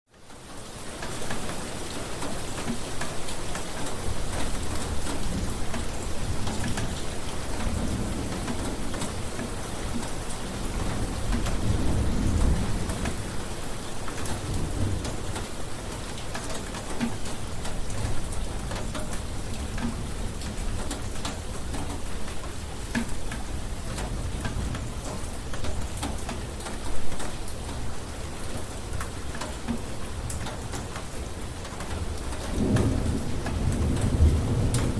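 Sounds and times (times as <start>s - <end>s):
heavy rain falling: 0.1s - 34.9s
rolling thunder rumble: 4.9s - 16.0s, 32.3s - 34.9s.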